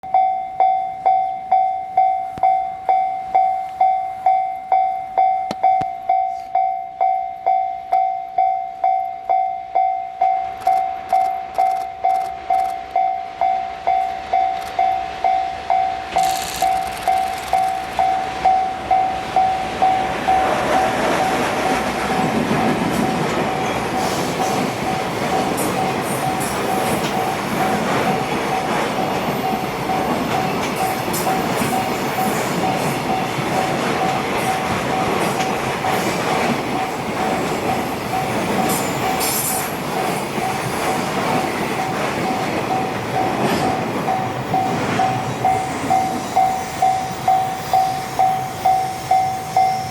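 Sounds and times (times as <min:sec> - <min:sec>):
level crossing warning bell: 0:00.0 - 0:49.9
train wheels rumbling on rails: 0:10.2 - 0:49.9.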